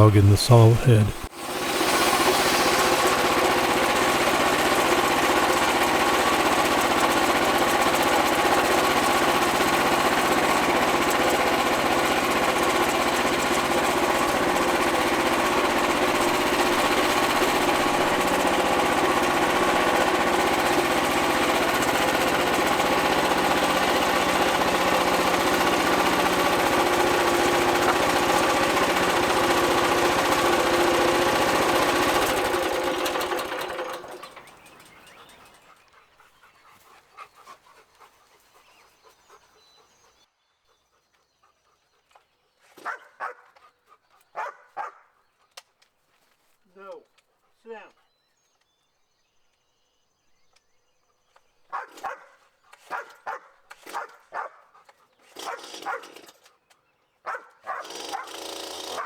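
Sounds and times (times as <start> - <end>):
sawmill engine running: 0.0 - 35.6
band saw cutting log: 1.2 - 7.4, 12.5 - 35.3.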